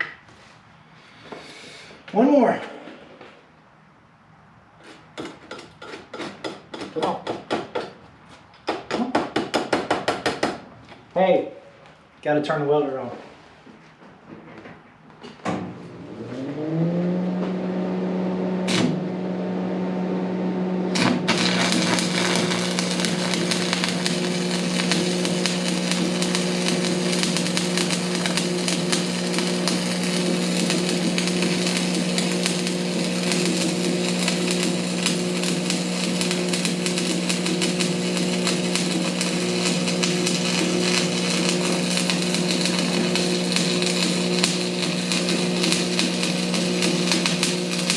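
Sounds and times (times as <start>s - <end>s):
welder engine running: 16.1s - 47.9s
welding arc crackling: 18.7s - 19.1s, 20.9s - 47.9s.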